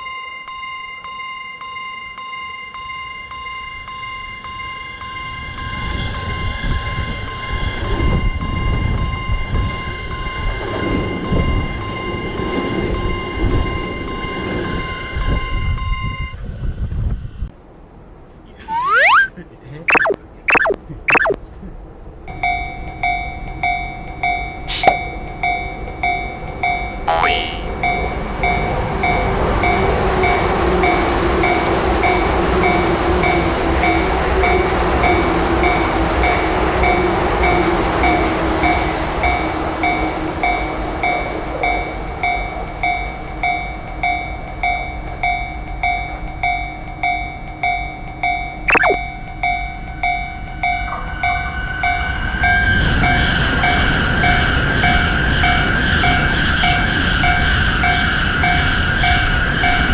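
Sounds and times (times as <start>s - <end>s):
brief falling sweep: 18.7s - 19.3s, 19.9s - 21.4s, 24.7s - 25.0s, 27.1s - 27.7s, 48.7s - 49.0s.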